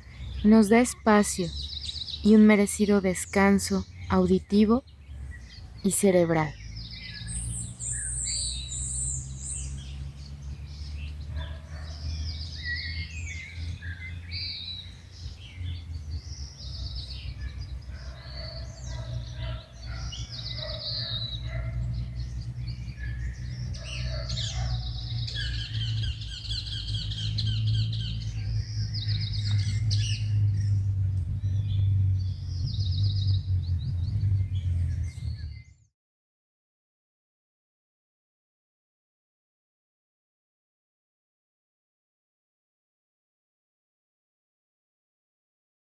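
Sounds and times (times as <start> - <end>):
wild birds chirping and trilling: 0.0 - 35.9.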